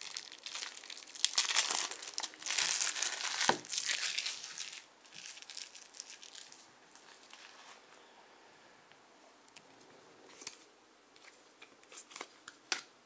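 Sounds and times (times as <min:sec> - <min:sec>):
plastic wrapping crinkling: 0:00.0 - 0:08.0.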